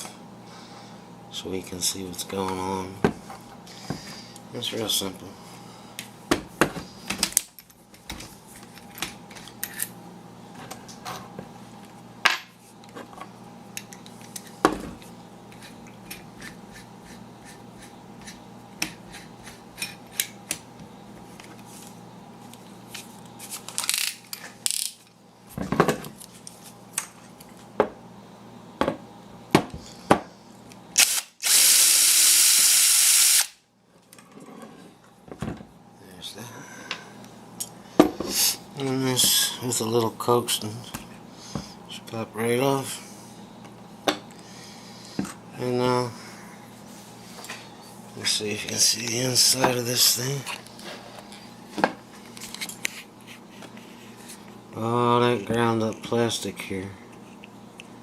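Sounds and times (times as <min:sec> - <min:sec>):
power drill running: 0:31.0 - 0:33.6.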